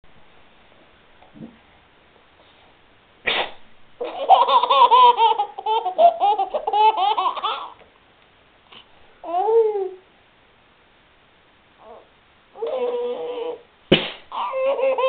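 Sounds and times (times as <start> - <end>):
sneeze: 3.2 - 3.7, 13.9 - 14.3
baby laughing hard: 4.0 - 7.8, 12.6 - 13.6, 14.3 - 15.0.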